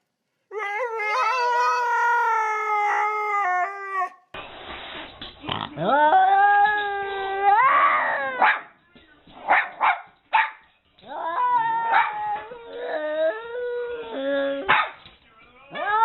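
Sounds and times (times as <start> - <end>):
dog howling: 0.5 - 4.2, 11.0 - 14.7.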